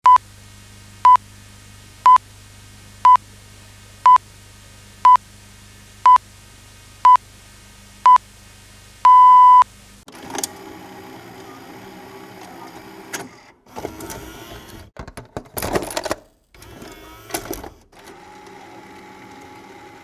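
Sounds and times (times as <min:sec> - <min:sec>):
tape player mechanism running: 0:09.0 - 0:15.0, 0:15.6 - 0:20.0
countdown beeps: 0:09.1 - 0:09.6.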